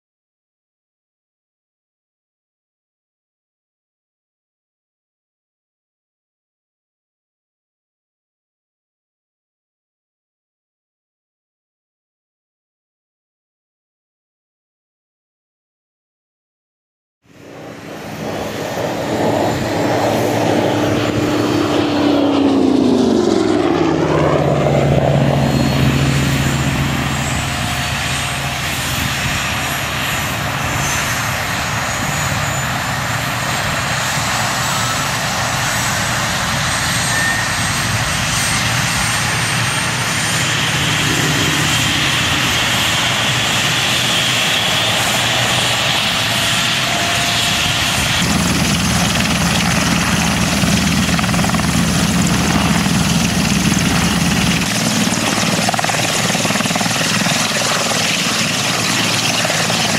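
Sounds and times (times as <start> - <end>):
helicopter flying past: 17.2 - 59.9
faint high whine: 25.3 - 59.9.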